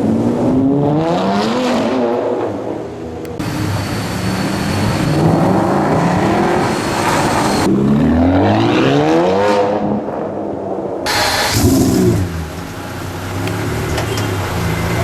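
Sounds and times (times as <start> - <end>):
supercar engine revving hard: 11.1 - 15.0.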